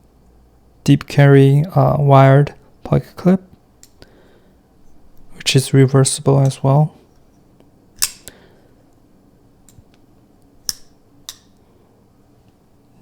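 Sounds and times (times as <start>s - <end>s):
folding knife metallic clicks: 8.0s - 8.4s, 10.6s - 11.5s.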